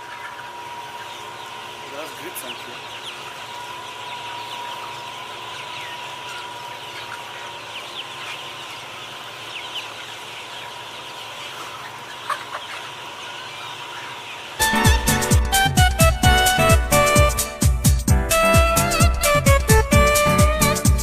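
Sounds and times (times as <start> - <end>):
sharp bird calls: 0.0 - 15.4
many birds chirping: 0.0 - 15.7.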